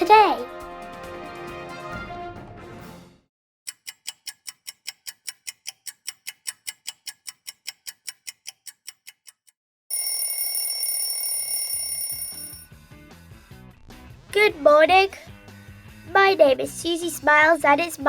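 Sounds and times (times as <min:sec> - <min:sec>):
clock ticking: 0:03.7 - 0:09.6
alarm clock ringing: 0:09.9 - 0:12.6.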